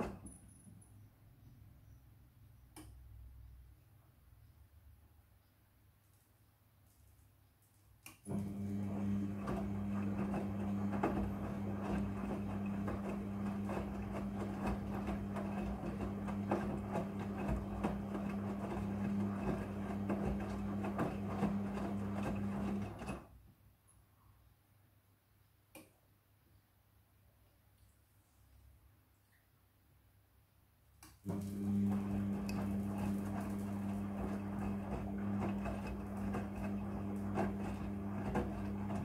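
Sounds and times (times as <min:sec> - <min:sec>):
washing machine motor hum: 0:08.2 - 0:23.4, 0:31.2 - 0:39.0.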